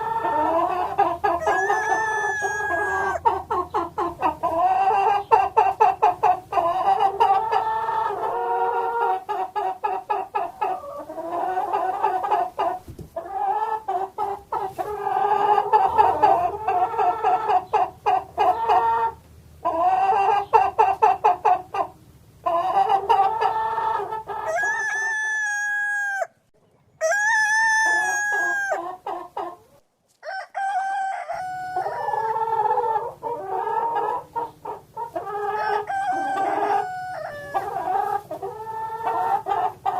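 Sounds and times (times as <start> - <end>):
chickens clucking: 0.0 - 39.9
rooster crowing: 1.4 - 3.3, 24.4 - 26.4, 27.0 - 28.8, 30.2 - 32.4, 35.5 - 37.7.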